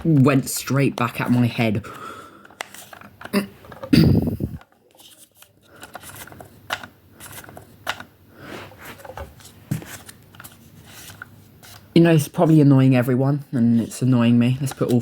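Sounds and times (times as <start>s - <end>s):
toy blaster plastic clicking and rattling: 4.6s - 8.1s.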